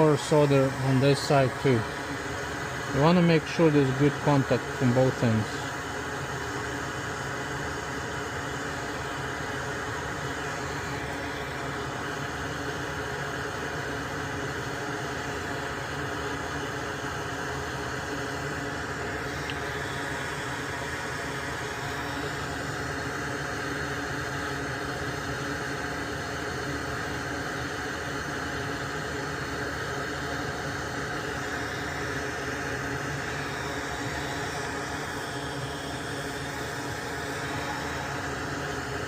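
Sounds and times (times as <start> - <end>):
small electric fan whirring: 0.0 - 39.0.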